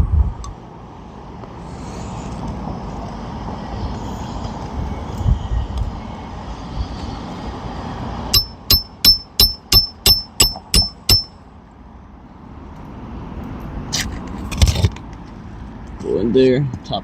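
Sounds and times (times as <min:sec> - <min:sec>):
hammer ringing strikes on metal: 0:08.3 - 0:11.3.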